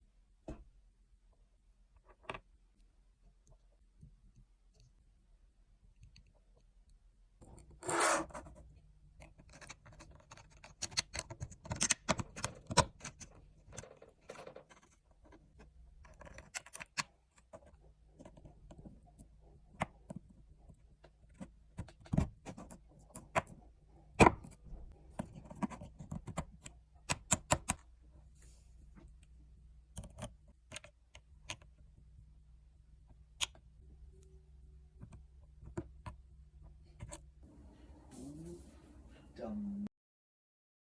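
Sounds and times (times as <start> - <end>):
plastic parts clicking and tapping: 9.2 - 27.9, 29.9 - 31.8.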